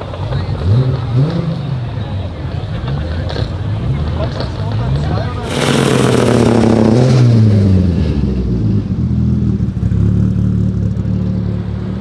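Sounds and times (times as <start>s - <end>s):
car engine running: 1.7s - 7.8s.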